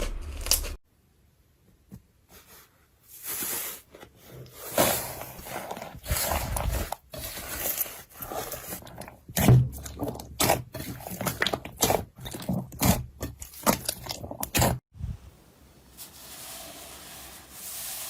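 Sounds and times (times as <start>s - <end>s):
slime squishing and crackling: 4.7s - 14.8s.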